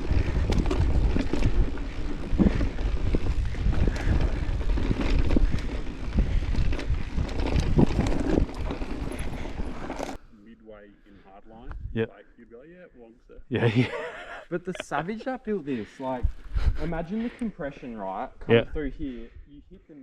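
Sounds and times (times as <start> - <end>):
bike rattling and knocking: 0.0 - 10.2
tyres rumbling on dirt: 0.0 - 10.2
wind over microphone: 0.0 - 10.2, 11.6 - 12.1, 16.2 - 17.0.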